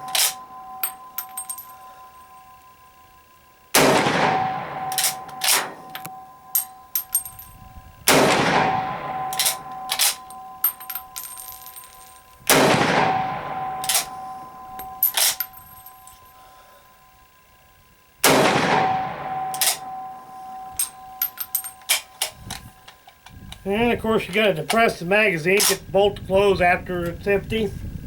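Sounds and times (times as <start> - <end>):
metallic clacks of rifle bolt: 0.1 - 0.4, 9.3 - 11.9, 13.8 - 14.1, 15.1 - 15.5, 19.6 - 19.8, 25.6 - 25.8
rifle shots echoing: 3.7 - 7.2, 8.1 - 15.5, 18.2 - 22.1.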